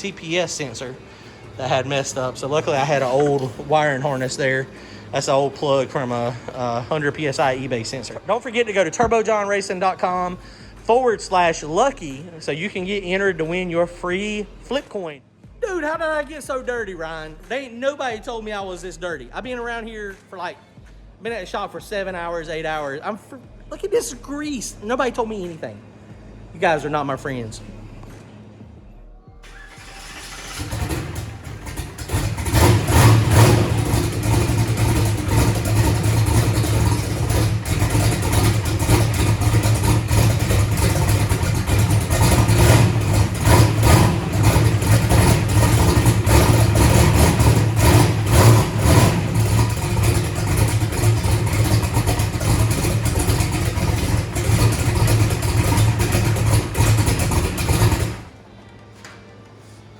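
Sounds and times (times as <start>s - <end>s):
car engine choppy idle: 0.0s - 14.6s, 29.4s - 58.3s.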